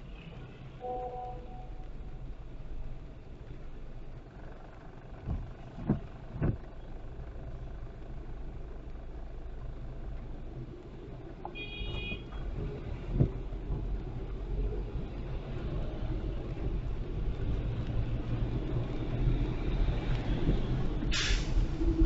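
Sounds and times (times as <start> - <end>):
high beep: 0.8 - 1.8
tyre rumble on wet road: 8.4 - 22.0.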